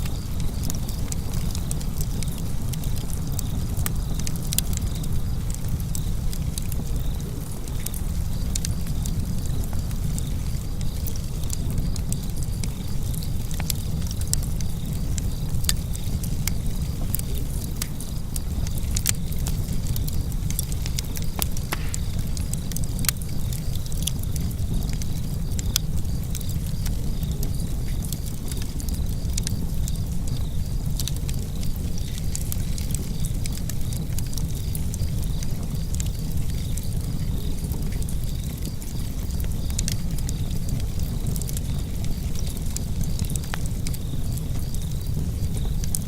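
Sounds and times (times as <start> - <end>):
fire crackling and popping: 0.0 - 46.0
wood fire rumbling: 0.0 - 46.0.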